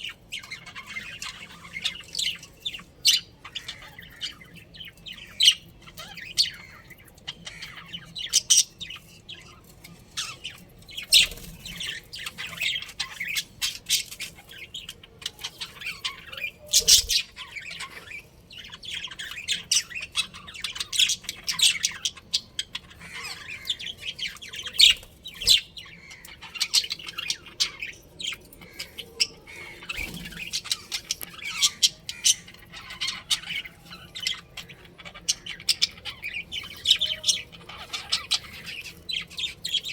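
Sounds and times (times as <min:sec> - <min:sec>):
budgerigars chirping and squawking: 0:00.0 - 0:39.9.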